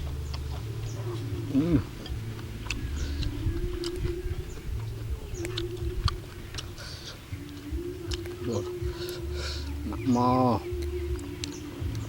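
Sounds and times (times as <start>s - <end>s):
chewing and wet mouth clicks: 0.0s - 12.0s
low steady hum: 0.0s - 12.0s.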